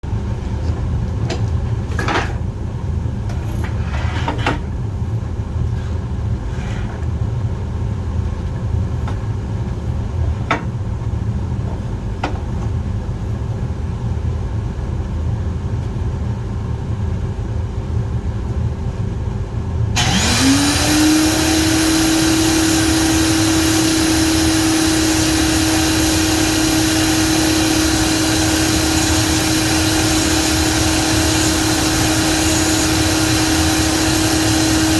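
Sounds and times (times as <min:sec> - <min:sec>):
power tool motor whine: 0:20.0 - 0:34.9
loud hiss: 0:23.2 - 0:34.9.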